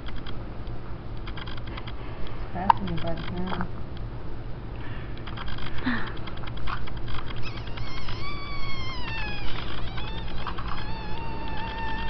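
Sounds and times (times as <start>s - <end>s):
cat meowing: 7.4s - 12.0s.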